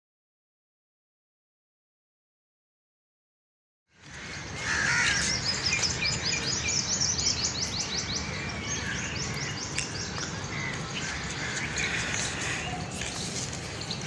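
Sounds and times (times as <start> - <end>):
small birds chirping: 4.0 - 14.0.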